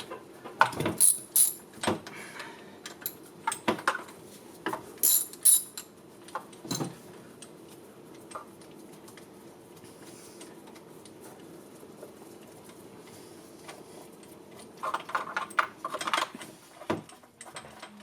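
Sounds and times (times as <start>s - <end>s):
metal tools clinking on engine: 1.0s - 1.6s, 5.0s - 5.9s.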